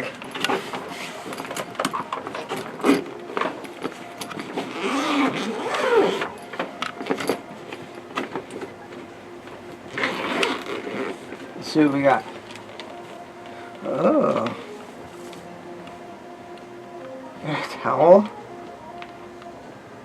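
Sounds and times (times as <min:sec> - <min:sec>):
rummaging through a bag: 0:00.0 - 0:15.5.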